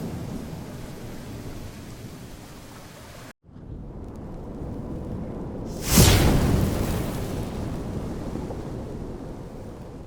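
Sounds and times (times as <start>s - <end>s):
loud thunderclap: 3.5s - 10.0s
low thunder rumble: 3.5s - 10.0s.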